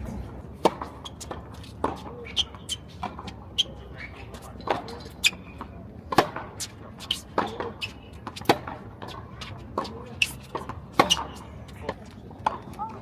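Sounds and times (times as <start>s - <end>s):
tennis balls struck by rackets: 0.0s - 2.1s.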